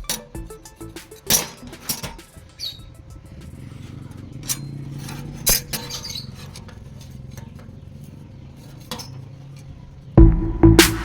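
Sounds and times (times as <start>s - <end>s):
metallic clinks of steel parts: 1.2s - 7.7s.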